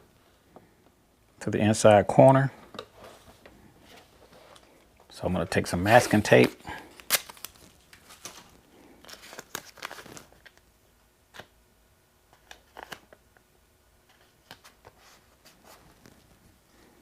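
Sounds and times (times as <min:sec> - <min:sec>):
masking tape ripping: 0:06.2 - 0:07.8.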